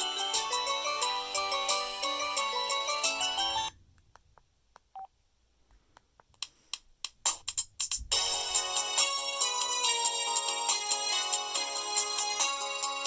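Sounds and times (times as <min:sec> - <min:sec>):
phone ringtone melody: 0:00.0 - 0:03.7.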